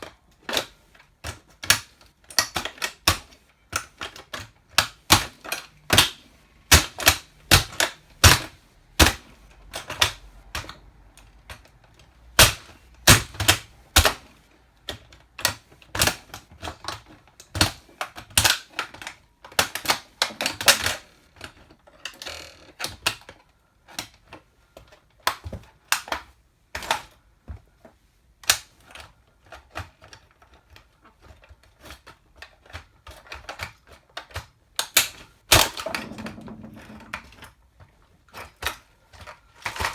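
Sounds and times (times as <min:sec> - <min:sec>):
plastic toy car cracking: 0:00.0 - 0:27.2, 0:28.4 - 0:39.9.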